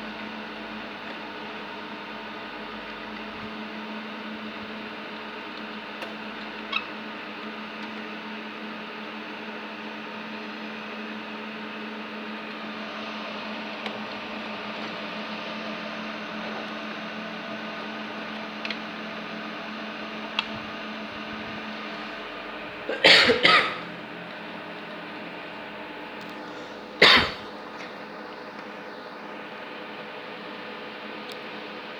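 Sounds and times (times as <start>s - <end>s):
machine hum: 12.4s - 31.3s
person coughing: 22.9s - 23.9s, 26.5s - 28.0s.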